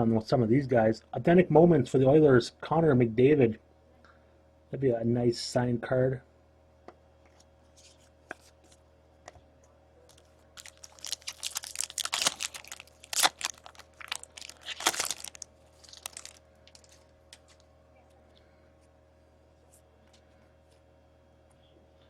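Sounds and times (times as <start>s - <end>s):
foil wrapper tearing and crinkling: 10.1s - 17.6s.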